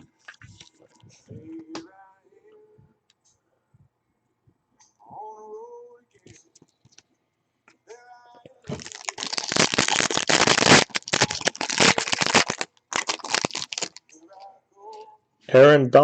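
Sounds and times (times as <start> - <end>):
wrapper tearing and crinkling: 8.7 - 14.1.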